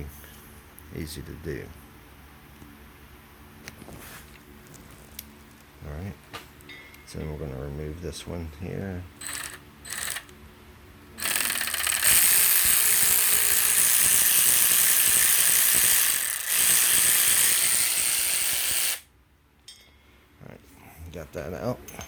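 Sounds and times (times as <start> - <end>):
ratchet wrench ratcheting: 9.2 - 10.3, 11.2 - 19.0.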